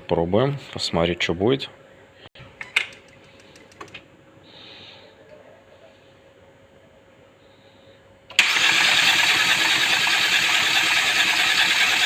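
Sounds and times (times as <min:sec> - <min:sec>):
starter motor cranking engine: 0:08.3 - 0:12.0.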